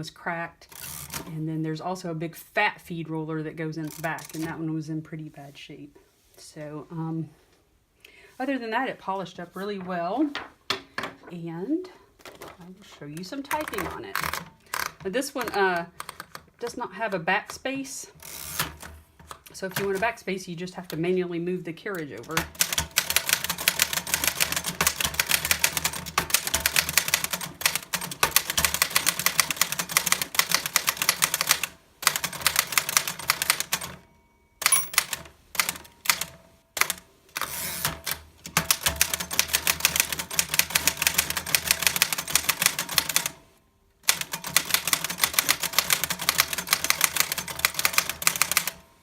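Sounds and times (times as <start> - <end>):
typewriter keys striking: 13.5 - 16.4, 22.2 - 34.0, 34.6 - 43.4, 44.0 - 48.8.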